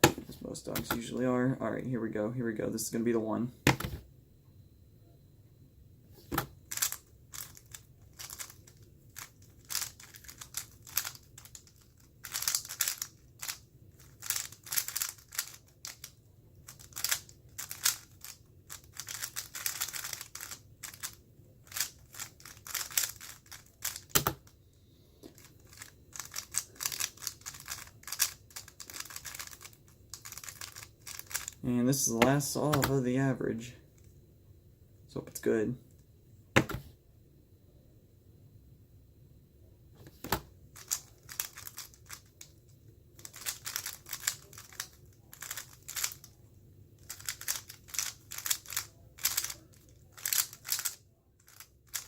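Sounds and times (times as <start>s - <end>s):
puzzle cube plastic clicking: 6.3s - 24.5s, 25.2s - 31.6s, 32.7s - 33.0s, 40.0s - 42.6s, 43.2s - 46.3s, 47.0s - 52.0s.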